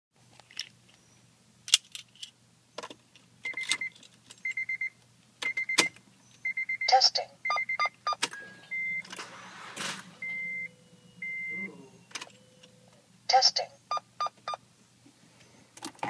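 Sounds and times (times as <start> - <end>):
car warning chime beeping: 3.5 - 12.9, 13.9 - 14.6.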